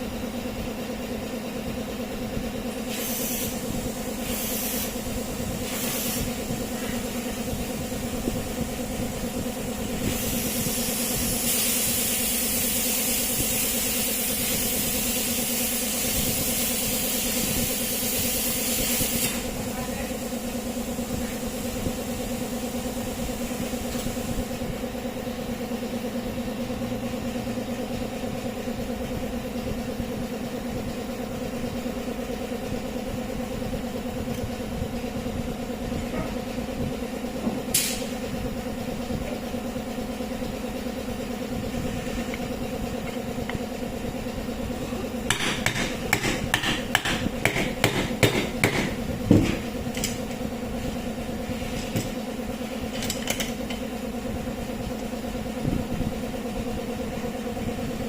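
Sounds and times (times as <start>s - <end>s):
sharp clicks and knocks: 45.3s - 50.2s.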